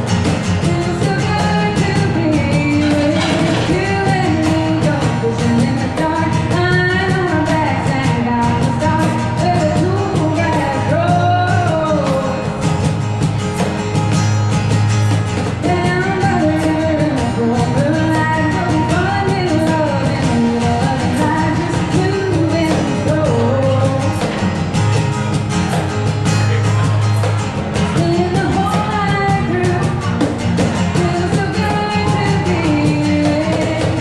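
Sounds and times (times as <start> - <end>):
guitar accompaniment: 0.0 - 34.0
person singing: 30.8 - 34.0.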